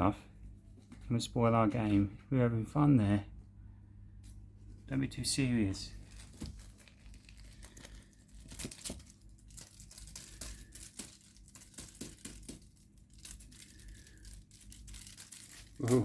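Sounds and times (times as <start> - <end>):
crinkly cat toy rustling: 4.2 - 16.0.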